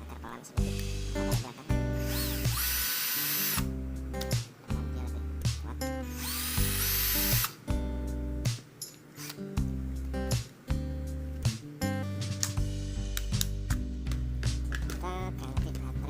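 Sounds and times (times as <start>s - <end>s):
background music with bass line: 0.6s - 2.8s, 3.5s - 8.8s, 9.4s - 16.0s
screw gun motor whirring: 2.0s - 3.7s, 6.1s - 7.6s, 9.2s - 9.4s.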